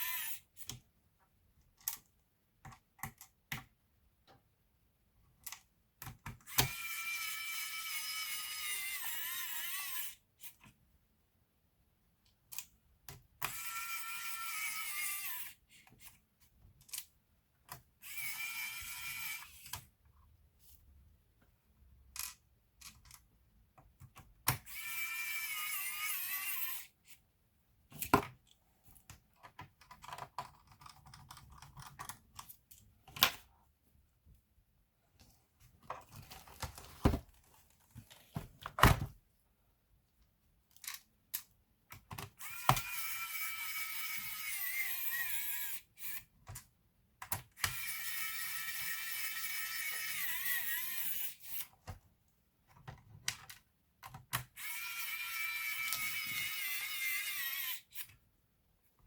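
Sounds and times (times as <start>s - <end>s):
electric screwdriver whirring: 6.5s - 10.2s, 18.0s - 19.7s, 42.4s - 46.2s, 54.5s - 58.1s
clicks and knocks of small parts: 15.8s - 19.9s, 22.1s - 24.9s, 40.6s - 43.0s, 52.7s - 56.9s.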